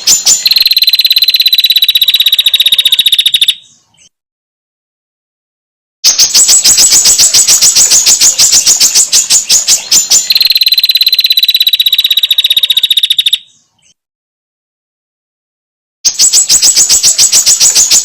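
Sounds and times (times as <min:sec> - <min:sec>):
bird rattling call: 0:00.0 - 0:03.6, 0:06.1 - 0:13.4
bird high trill: 0:00.0 - 0:03.8, 0:06.0 - 0:13.6, 0:16.1 - 0:18.0.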